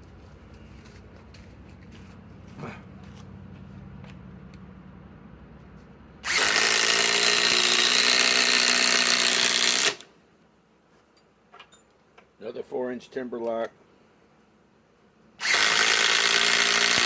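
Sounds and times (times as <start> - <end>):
impact driver driving screw into wood: 6.2 - 10.1, 15.4 - 17.0.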